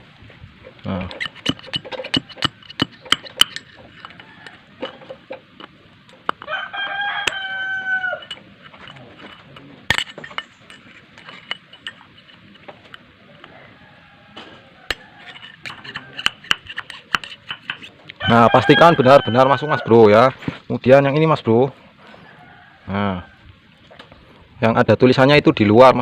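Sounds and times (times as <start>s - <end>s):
rooster crowing: 3.8s - 5.4s, 6.4s - 8.4s, 13.2s - 16.4s, 18.2s - 20.0s, 22.1s - 23.5s
clicks and knocks of parts handled: 8.2s - 13.0s.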